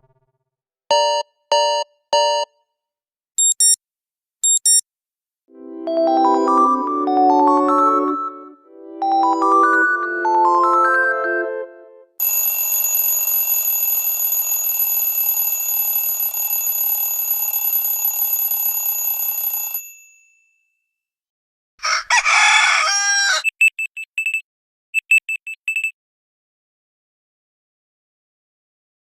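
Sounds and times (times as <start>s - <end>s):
short high electronic beeps: 3.4s - 3.8s, 4.4s - 4.8s
phone ringing tone: 12.2s - 20.0s
rooster crow: 21.8s - 23.5s.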